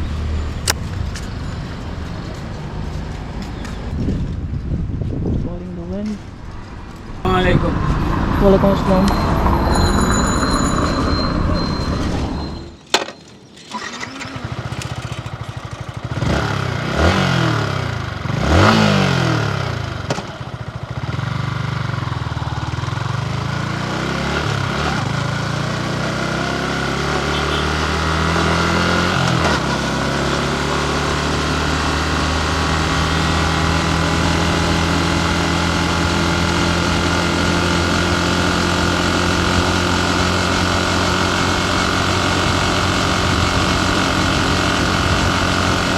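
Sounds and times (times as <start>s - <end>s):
motorcycle engine revving and idling: 13.5s - 45.9s.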